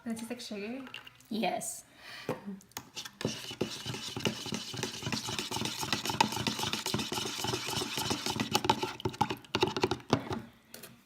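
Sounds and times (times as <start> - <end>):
liquid mixture being stirred: 0.7 - 1.3, 2.8 - 10.4.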